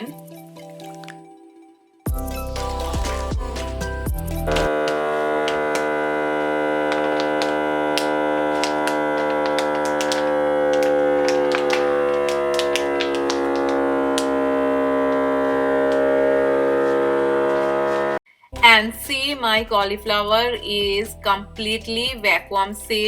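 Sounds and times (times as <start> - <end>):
vacuum sealer pump running: 4.5 - 18.2
plastic bag crackling: 8.4 - 14.4.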